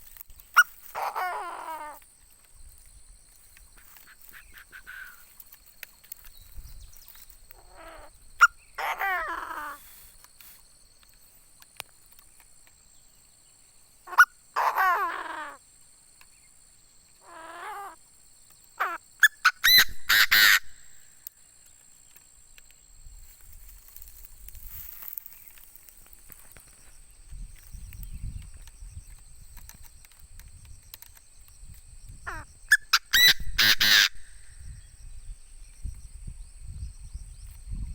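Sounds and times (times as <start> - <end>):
francolin harsh crowing: 0.6 - 2.0, 7.6 - 10.1, 14.1 - 15.6, 17.2 - 18.0, 18.8 - 21.1, 32.2 - 34.7.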